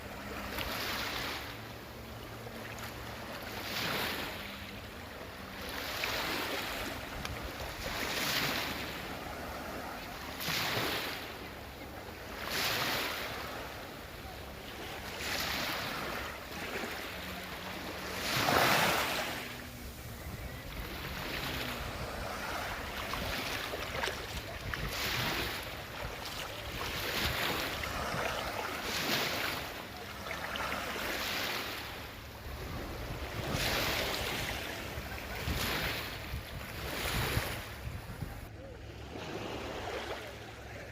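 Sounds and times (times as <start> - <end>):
small waves washing onto shore: 0.0 - 40.9
wind rumbling on microphone: 17.9 - 29.4, 32.3 - 38.7.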